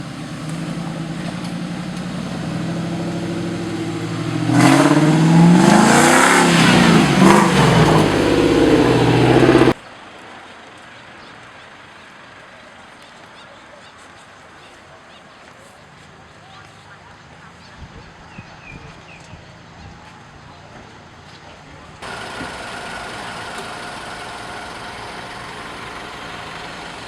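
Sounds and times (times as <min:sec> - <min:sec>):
engine running and revving: 0:00.0 - 0:09.8, 0:22.0 - 0:27.0.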